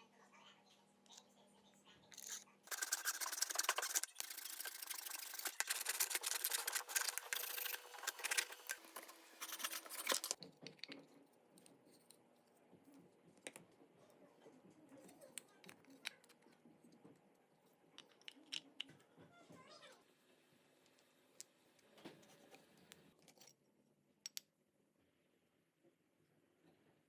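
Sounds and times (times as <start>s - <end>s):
hand tool scraping metal: 2.2s - 10.4s.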